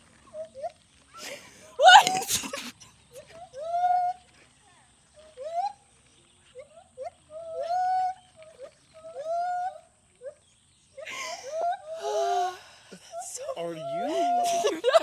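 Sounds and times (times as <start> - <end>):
breathy cries: 1.2 - 2.8, 11.0 - 13.2, 14.0 - 15.0.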